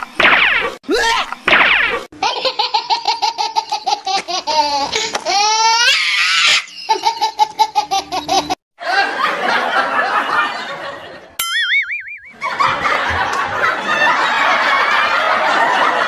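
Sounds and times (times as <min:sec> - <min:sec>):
high-pitched laughter: 0:02.2 - 0:09.3.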